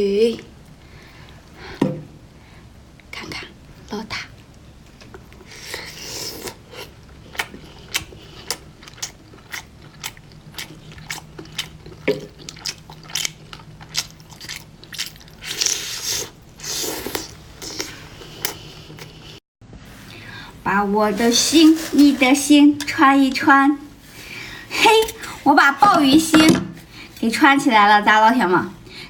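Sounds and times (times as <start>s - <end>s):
quiet chewing: 4.4s - 19.4s.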